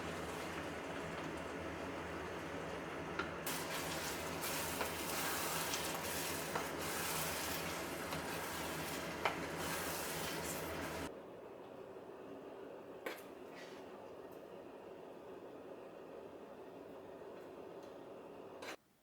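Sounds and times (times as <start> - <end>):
food sizzling in a pan: 3.4 - 11.1.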